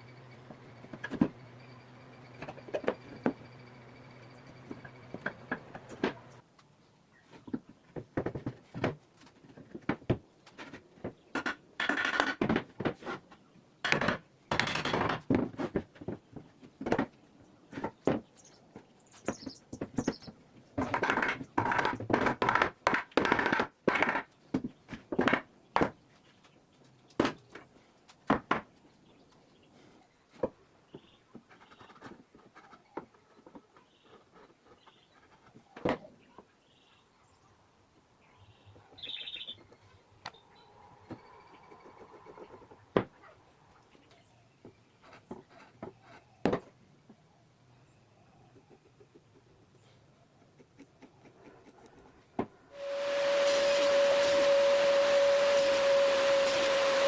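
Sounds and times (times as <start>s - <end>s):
wood and tools clattering: 7.4s - 25.9s
faint bird chirps: 38.2s - 45.1s
wood scraping: 52.8s - 57.0s.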